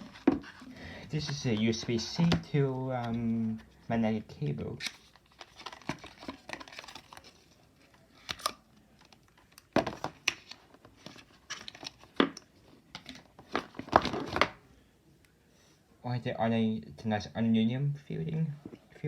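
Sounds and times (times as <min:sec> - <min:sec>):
paper packaging crinkling and tearing: 0:04.8 - 0:08.6.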